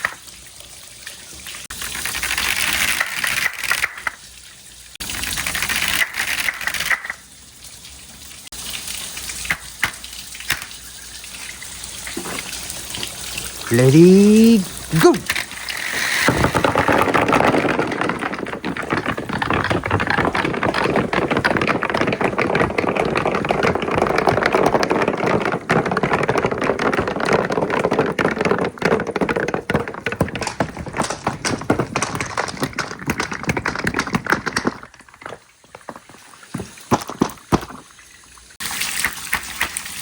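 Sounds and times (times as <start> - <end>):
glass marbles rolling and clattering: 1.7 - 4.2, 5.1 - 7.2, 13.7 - 37.8.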